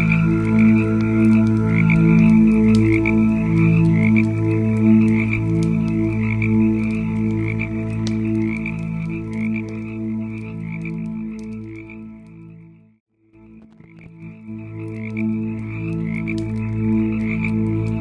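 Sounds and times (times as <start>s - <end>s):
pulsing low drone: 0.0s - 11.3s
campfire crackling and popping: 0.0s - 12.5s, 13.4s - 18.0s.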